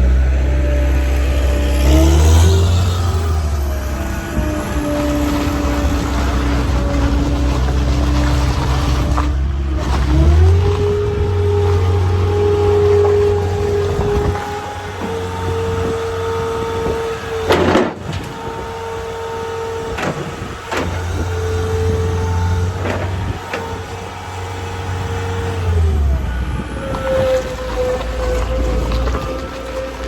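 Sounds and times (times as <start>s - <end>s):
diesel engine humming: 0.0s - 30.0s
sharp clunks: 17.5s - 18.4s.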